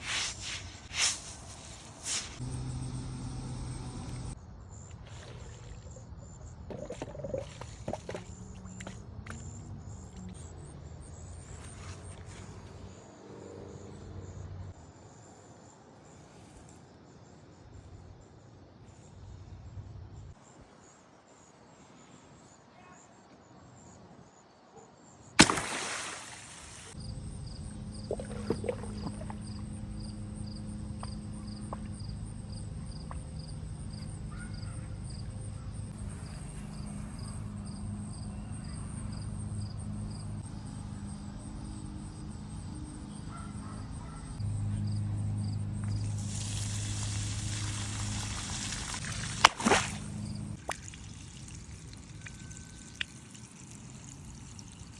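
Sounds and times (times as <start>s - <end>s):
steady low hum: 0.6s - 4.4s, 26.9s - 50.6s.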